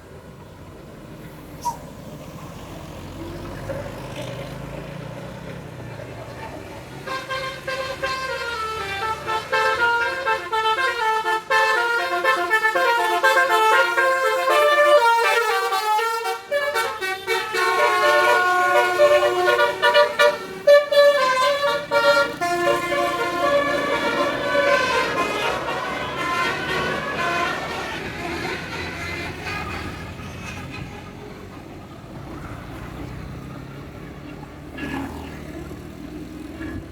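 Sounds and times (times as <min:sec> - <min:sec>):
musical bus horn playing a tune: 0:07.0 - 0:31.2.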